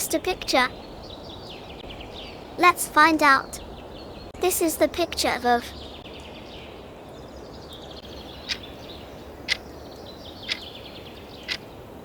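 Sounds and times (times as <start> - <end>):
birds chirping faintly: 0.0 - 11.9
outdoor ambience: 0.0 - 12.0.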